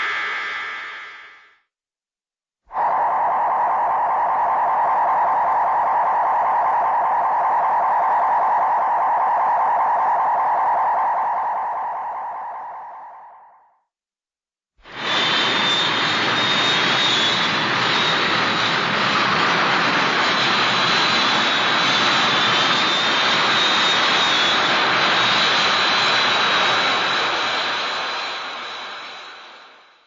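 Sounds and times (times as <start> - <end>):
jet-like rush with high whine: 14.8 - 30.0.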